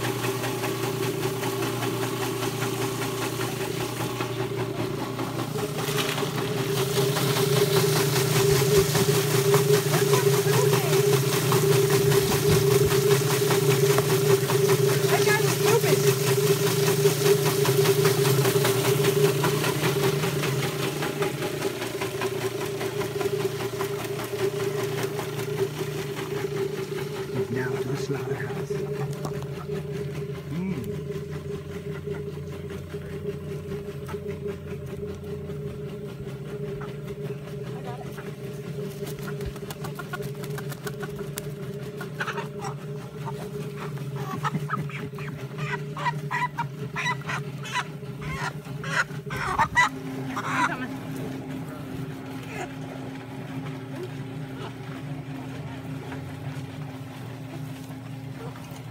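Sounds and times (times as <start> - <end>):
machine motor humming and pulsing: 0.0 - 58.9
chicken calls: 39.2 - 51.2.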